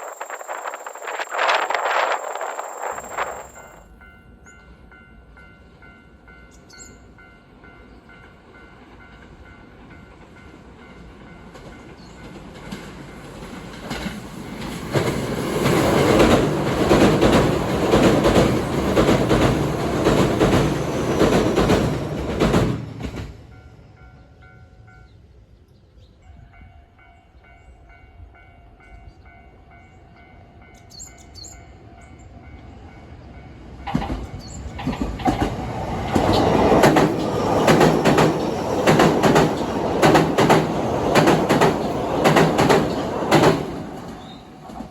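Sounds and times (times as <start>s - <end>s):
level crossing warning bells: 0.0s - 10.6s
train wheels clattering over rails: 11.4s - 23.5s, 33.8s - 44.9s.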